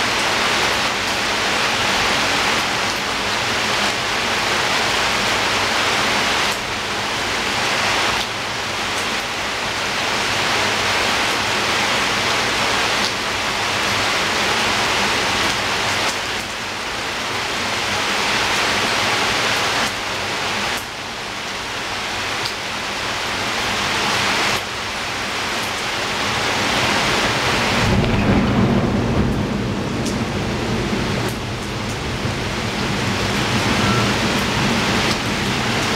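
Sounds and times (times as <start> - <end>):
rain on a window: 0.0 - 35.9
low rumble: 27.7 - 33.7.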